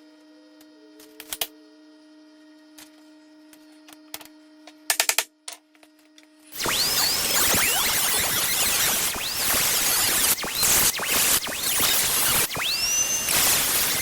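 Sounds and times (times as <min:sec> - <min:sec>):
rotary tool whining: 0:06.6 - 0:14.0.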